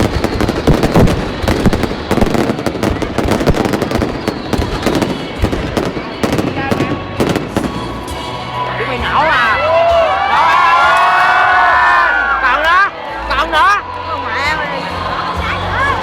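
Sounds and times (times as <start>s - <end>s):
fireworks bangs and crackles: 0.0s - 8.6s
crowd voices: 0.0s - 16.0s.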